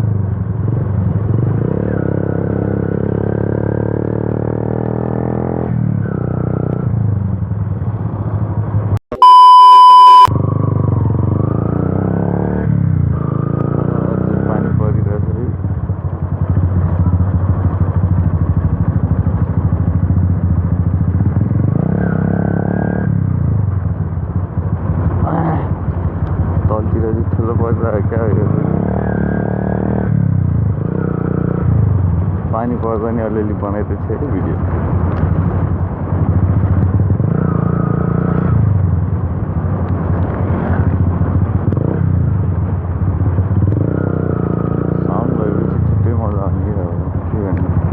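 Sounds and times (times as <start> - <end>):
brief pitched sound: 9.1 - 10.3
motorcycle engine running: 13.1 - 28.7, 38.2 - 47.9.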